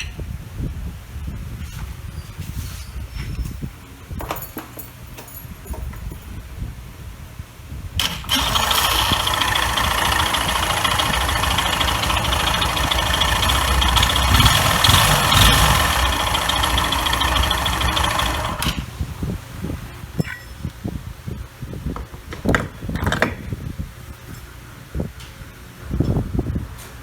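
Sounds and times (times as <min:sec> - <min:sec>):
scooter engine running: 0:08.0 - 0:18.9.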